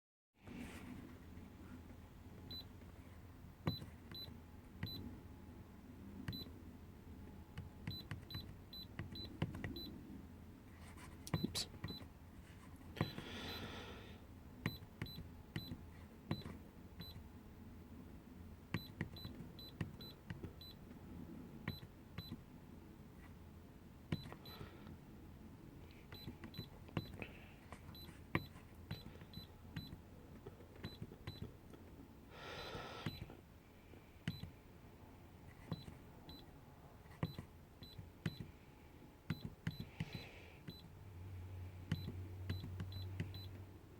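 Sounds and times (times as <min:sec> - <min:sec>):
keypad clicks: 0:07.6 - 0:09.9, 0:14.6 - 0:17.3, 0:18.7 - 0:20.8, 0:28.3 - 0:31.6, 0:34.2 - 0:34.6, 0:37.2 - 0:38.5, 0:39.3 - 0:40.9, 0:41.9 - 0:43.6.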